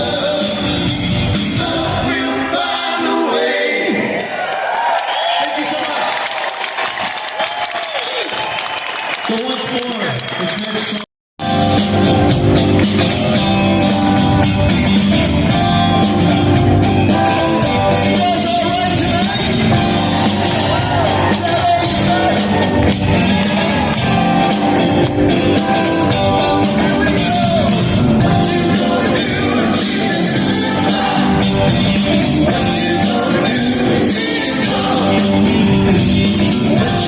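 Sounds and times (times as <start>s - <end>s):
live rock band playing: 0.0s - 2.6s, 11.4s - 37.0s
person singing: 26.4s - 37.0s.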